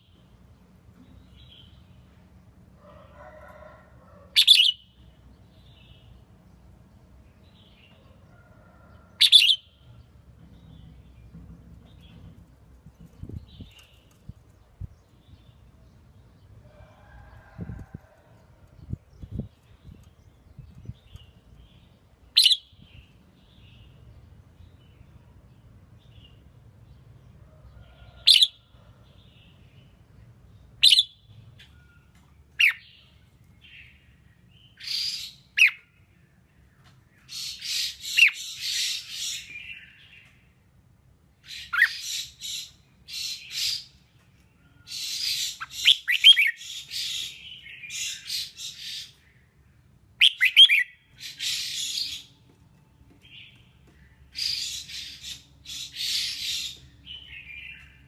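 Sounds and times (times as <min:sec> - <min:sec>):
bird singing: 0:04.4 - 0:06.2, 0:41.4 - 0:58.0.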